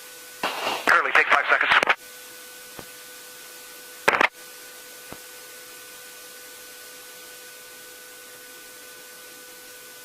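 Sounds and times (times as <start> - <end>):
loud radio crackle: 0.4 - 2.0, 4.0 - 4.3
radio intercom hiss: 0.4 - 2.0, 4.1 - 4.3.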